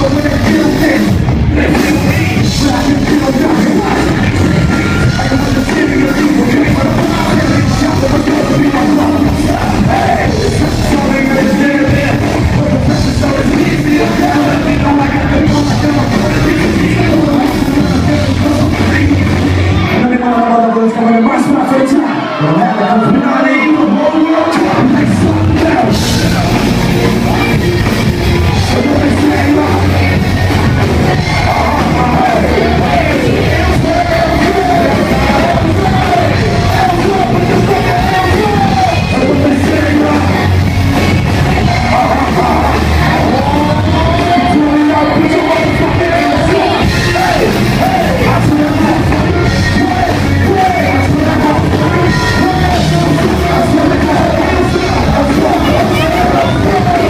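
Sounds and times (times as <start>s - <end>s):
bass-heavy backing track: 0.0s - 20.7s, 22.8s - 57.0s
live concert music through speakers: 0.0s - 57.0s
vocalist yelling and singing: 0.0s - 57.0s.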